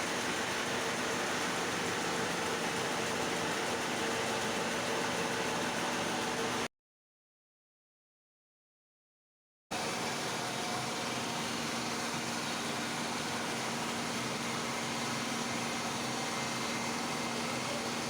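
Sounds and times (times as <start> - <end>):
machine hum with hiss: 0.0 - 6.7, 9.8 - 18.0.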